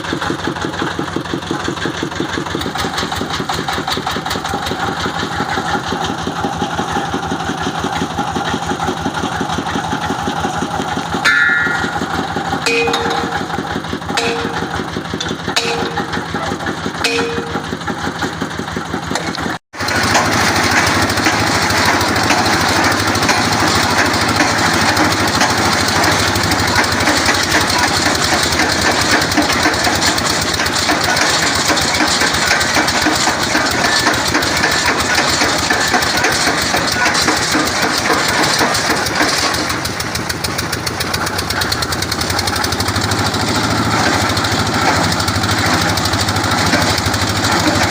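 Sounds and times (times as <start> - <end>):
boring machine engine running: 0.0 - 47.9
short ringing notes: 11.2 - 16.4, 17.0 - 17.9.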